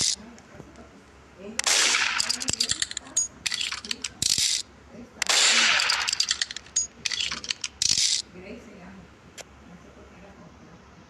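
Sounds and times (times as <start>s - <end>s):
rattling and clicking bursts: 2.0s - 4.6s, 5.2s - 8.2s.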